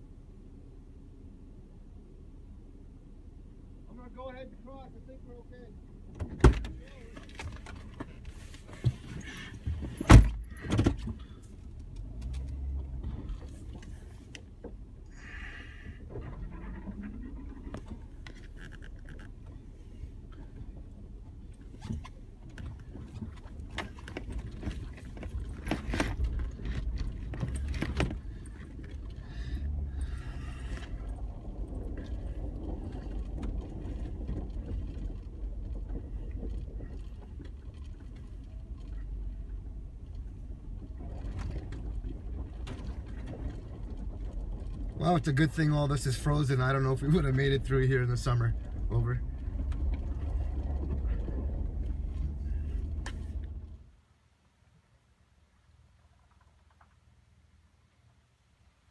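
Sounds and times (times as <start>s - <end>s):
engine idling rumble: 0.0s - 58.9s
knocks creaks and crunches on ice: 15.3s - 21.0s, 21.6s - 39.2s.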